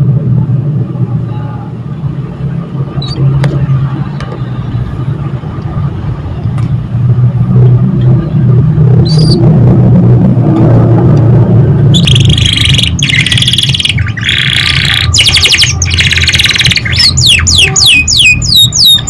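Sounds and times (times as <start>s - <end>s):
loud low rumble: 0.0s - 19.0s
canary chirps: 3.0s - 3.2s, 9.0s - 9.4s, 11.9s - 19.0s.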